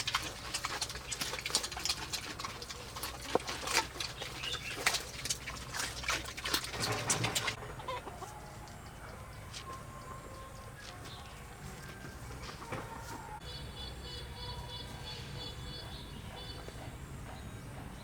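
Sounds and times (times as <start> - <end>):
chickens clucking: 0.0 - 13.5.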